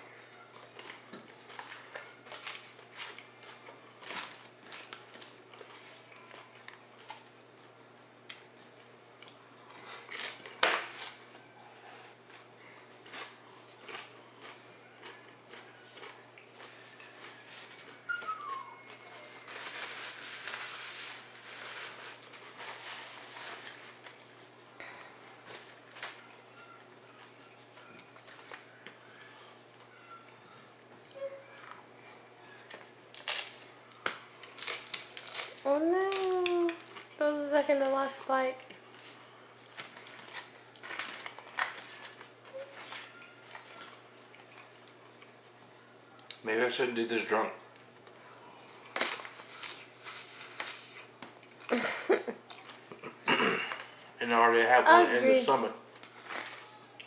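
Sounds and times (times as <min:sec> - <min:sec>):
food rustling: 0:00.0 - 0:07.4, 0:08.4 - 0:45.4, 0:47.7 - 0:53.1, 0:53.7 - 0:57.0
crunching nachos: 0:00.0 - 0:54.2, 0:55.7 - 0:57.0
falling whistle-like tone: 0:18.1 - 0:19.3.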